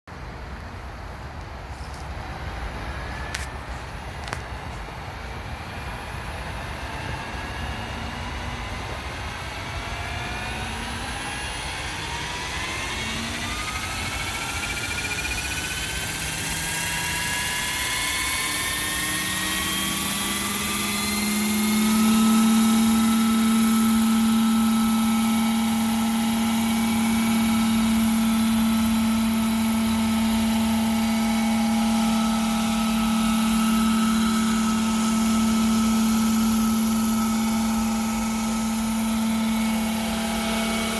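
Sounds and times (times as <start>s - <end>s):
model helicopter whine: 0.2s - 40.9s.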